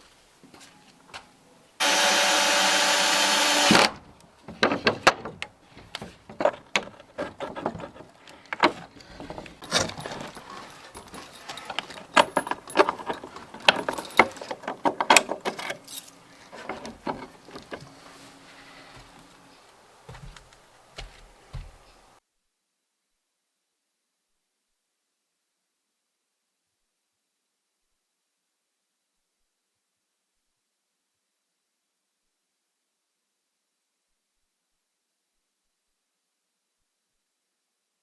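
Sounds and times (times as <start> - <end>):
power drill running: 1.8 - 4.0
knocks and clicks of handling: 4.5 - 15.8.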